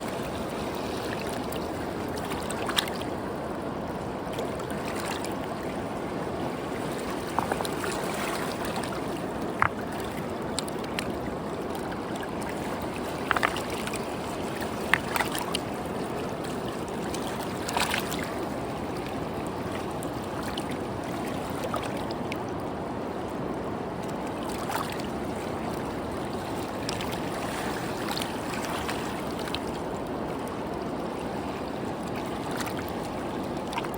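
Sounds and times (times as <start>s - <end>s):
running water: 0.0s - 22.4s.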